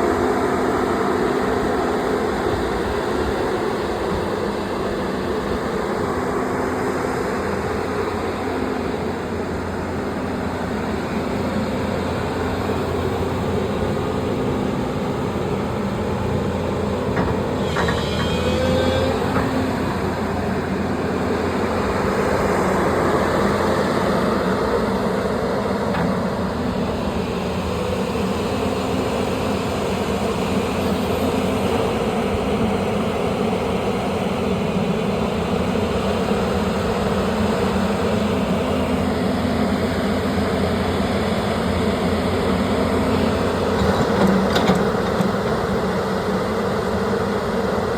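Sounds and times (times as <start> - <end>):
diesel excavator engine running: 0.0 - 47.9
brief high squeal: 17.4 - 19.8.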